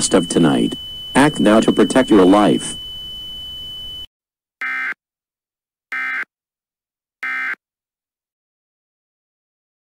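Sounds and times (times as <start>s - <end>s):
digital data tone bursts: 0.0s - 4.1s.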